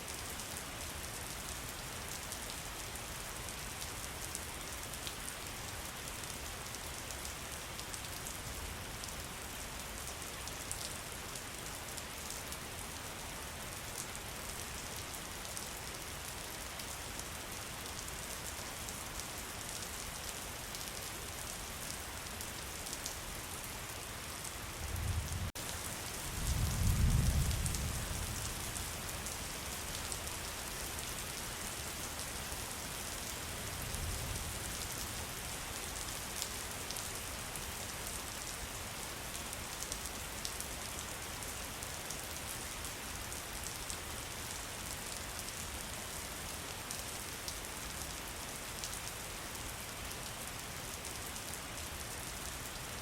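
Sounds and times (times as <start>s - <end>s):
heavy rain on foliage: 0.0s - 53.0s
thunder rumble: 26.4s - 28.3s.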